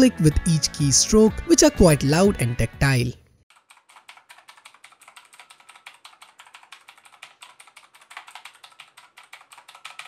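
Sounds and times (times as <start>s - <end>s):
clicky keyboard typing: 3.5s - 10.0s.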